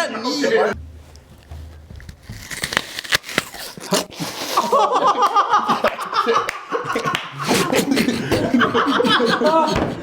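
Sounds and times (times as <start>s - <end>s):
stifled giggling laughter: 4.6s - 10.0s.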